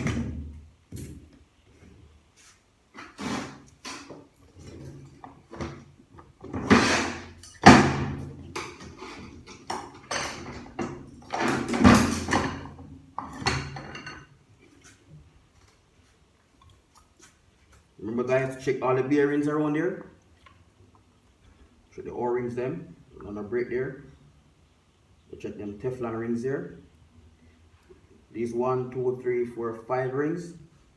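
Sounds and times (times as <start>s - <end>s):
metal scraping: 6.5s - 7.6s.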